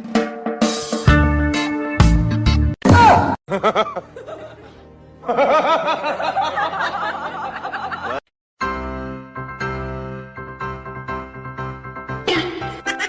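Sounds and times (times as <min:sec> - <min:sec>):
music: 0:00.0 - 0:13.0.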